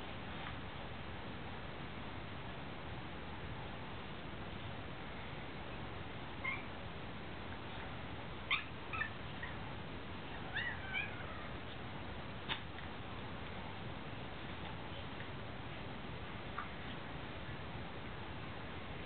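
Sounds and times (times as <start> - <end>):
cat meowing: 10.4 - 11.5.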